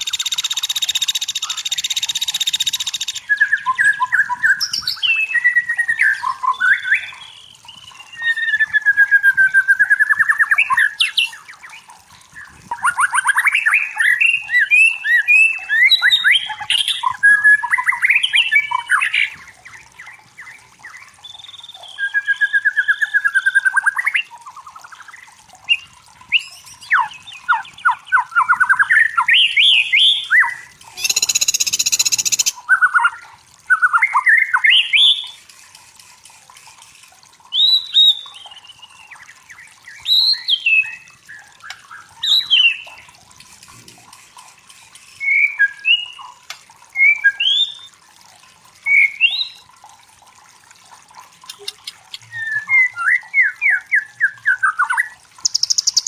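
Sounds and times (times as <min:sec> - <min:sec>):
bird whistling and trilling: 0:00.0 - 0:35.4, 0:37.5 - 0:43.1, 0:45.2 - 0:48.0, 0:48.8 - 0:49.6, 0:51.5 - 0:56.0.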